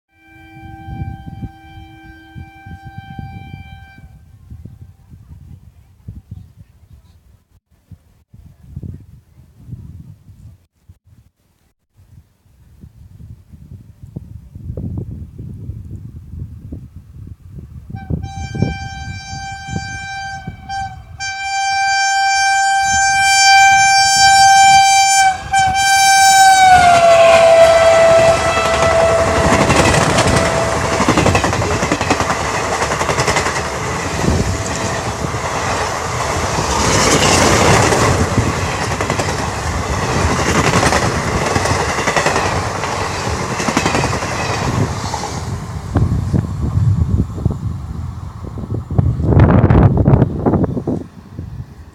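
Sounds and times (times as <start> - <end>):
locomotive horn honking: 0.1 - 4.4, 17.9 - 32.8, 33.5 - 35.6
train coaches rushing and clattering: 26.8 - 46.2.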